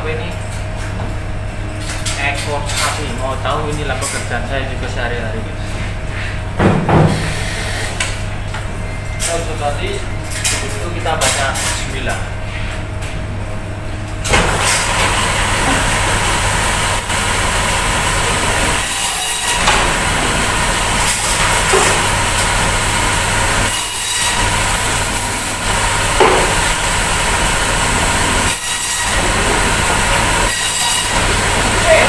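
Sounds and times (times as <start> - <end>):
electric saw cutting frozen meat: 14.3 - 32.0.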